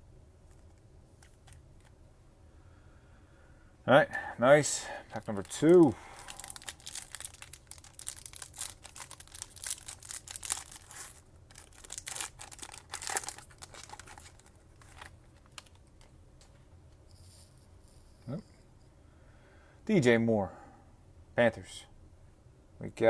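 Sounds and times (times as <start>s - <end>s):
foil wrapper tearing and crinkling: 5.1s - 16.0s.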